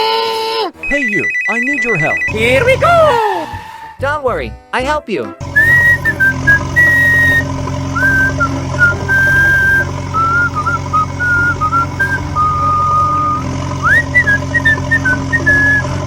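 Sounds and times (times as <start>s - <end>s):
whistled melody: 0.8s - 3.6s, 5.5s - 16.0s
steady low hum: 5.4s - 16.0s.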